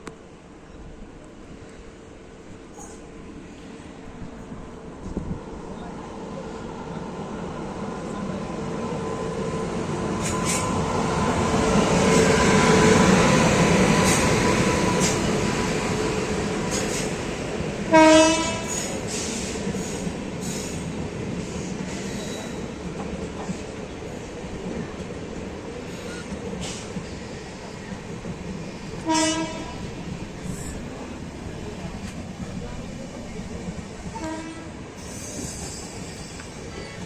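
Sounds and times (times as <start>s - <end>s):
train running on rails: 0.0s - 37.0s
train horn blast: 17.9s - 18.9s, 29.0s - 29.9s, 34.1s - 34.8s.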